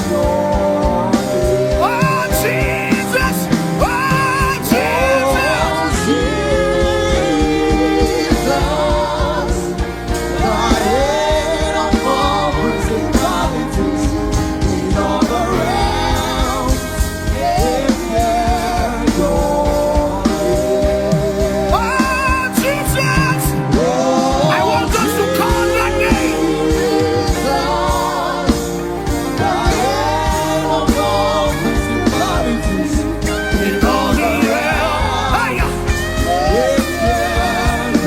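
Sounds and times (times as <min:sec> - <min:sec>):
band playing steady beat: 0:00.0 - 0:38.0
person singing long notes: 0:33.4 - 0:36.7.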